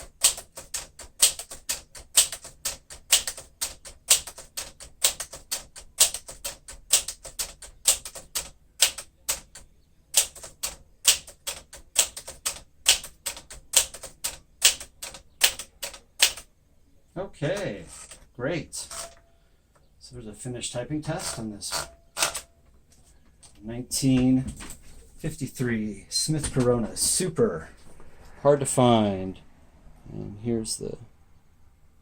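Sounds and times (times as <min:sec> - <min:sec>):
manual typewriter typing: 0:00.0 - 0:16.5, 0:17.5 - 0:19.2, 0:21.0 - 0:22.6.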